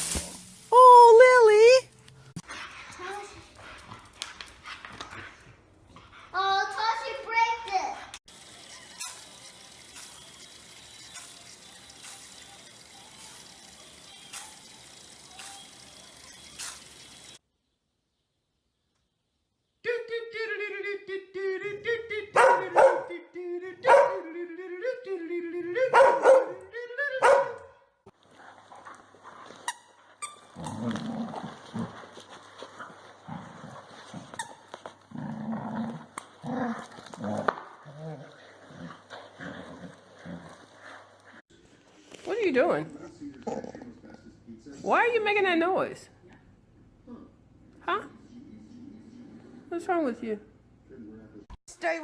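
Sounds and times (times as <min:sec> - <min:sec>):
running water: 0:08.3 - 0:17.4.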